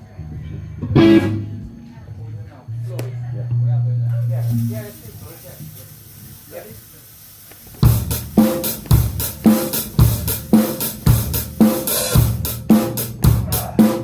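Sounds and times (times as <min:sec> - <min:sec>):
drum kit rock beat: 0:07.6 - 0:14.0.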